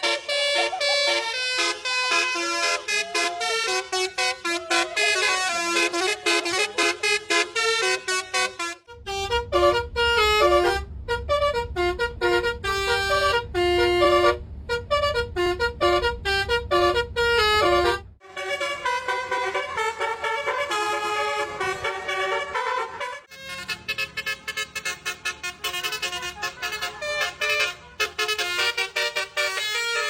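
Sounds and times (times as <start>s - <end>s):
musical truck horn playing a tune: 0.0s - 30.0s
engine idling rumble: 8.9s - 18.9s, 21.4s - 30.0s.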